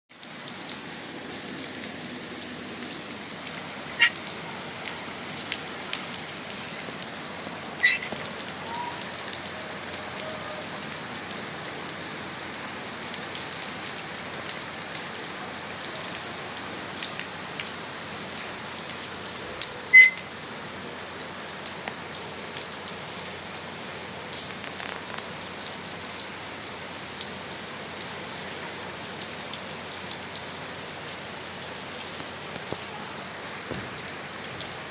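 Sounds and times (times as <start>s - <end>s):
steady rain falling: 0.1s - 34.9s
raindrops tapping nearby: 0.2s - 34.9s.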